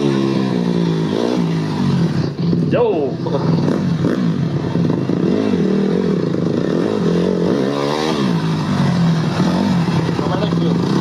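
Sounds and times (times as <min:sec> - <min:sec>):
dirt bike engine idling and revving: 0:00.0 - 0:11.0.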